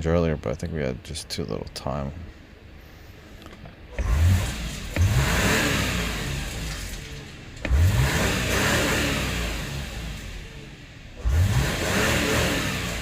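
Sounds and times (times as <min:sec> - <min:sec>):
car engine revving: 0:03.9 - 0:13.0.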